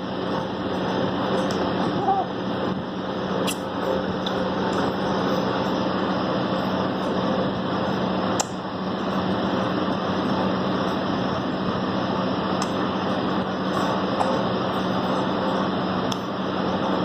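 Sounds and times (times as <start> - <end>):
fan humming and hissing: 0.0 - 17.0.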